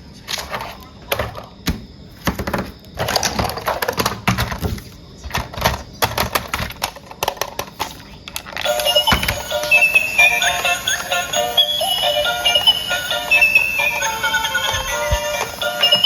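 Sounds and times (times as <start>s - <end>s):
plastic toy parts clicking: 5.3s - 9.3s
music: 8.6s - 16.0s.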